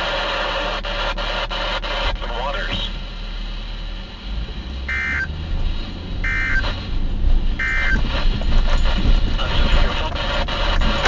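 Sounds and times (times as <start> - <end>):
steady low rumble: 0.0 - 11.0
buzzy digital data squawks: 4.9 - 5.3, 6.2 - 6.7, 7.6 - 8.0.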